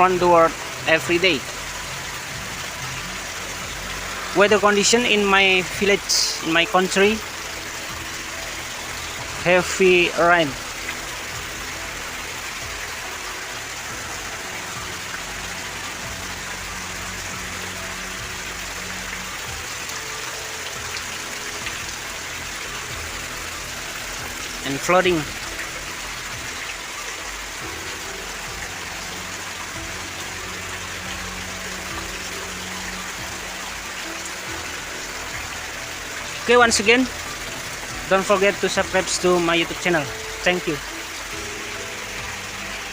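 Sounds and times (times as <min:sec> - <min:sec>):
heavy rain falling: 0:00.0 - 0:42.9
running water: 0:00.0 - 0:42.9.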